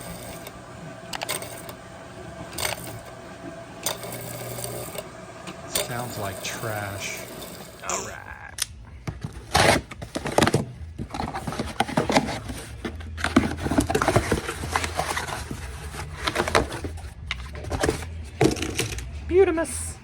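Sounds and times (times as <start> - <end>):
pump humming with clicking rattling: 0.0 - 7.9.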